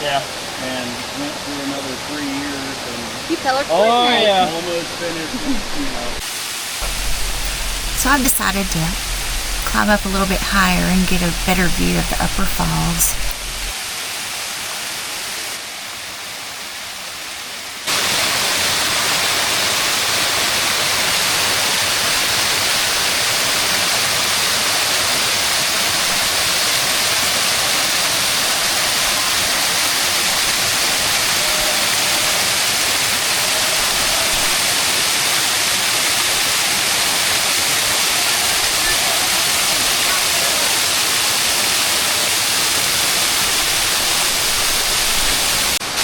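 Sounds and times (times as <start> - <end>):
waterfall rushing: 5.2 - 13.7, 17.9 - 22.4.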